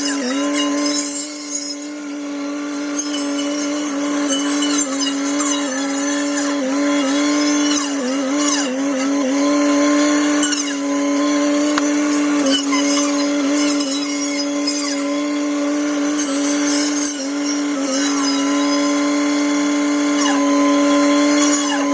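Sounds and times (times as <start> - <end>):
hedgecutter circular saw running: 0.0 - 21.9.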